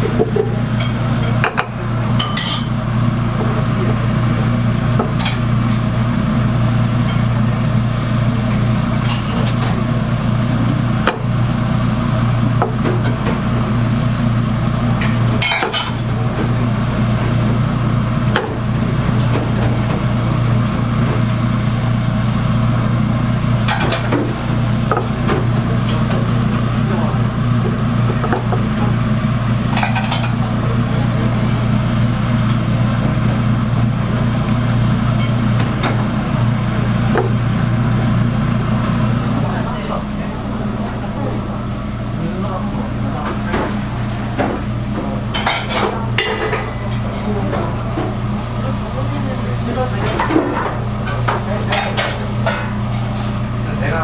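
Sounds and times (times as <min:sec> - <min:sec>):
loud low hum: 0:16.1 - 0:49.1.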